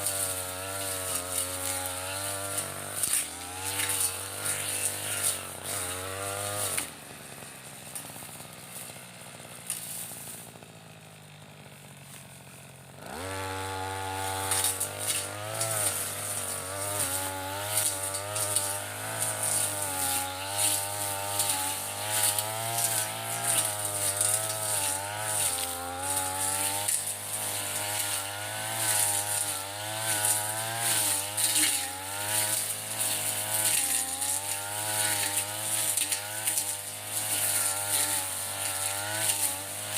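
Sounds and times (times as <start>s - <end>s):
brushcutter engine revving: 0.0s - 39.9s.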